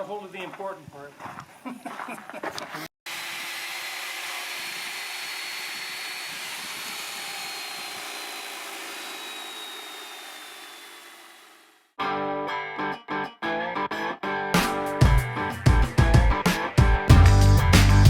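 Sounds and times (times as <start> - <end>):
small motor whining: 3.1 - 11.9.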